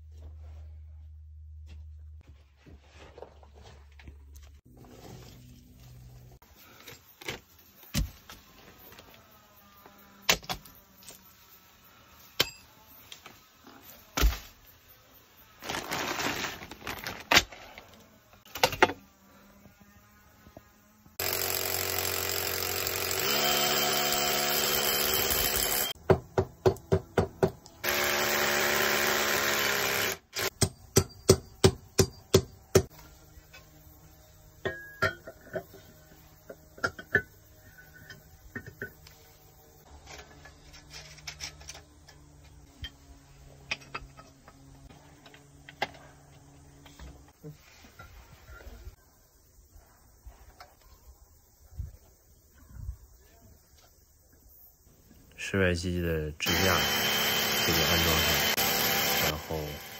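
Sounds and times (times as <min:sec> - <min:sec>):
power tool running: 0:21.2 - 0:26.0, 0:27.7 - 0:30.6, 0:56.4 - 0:59.9.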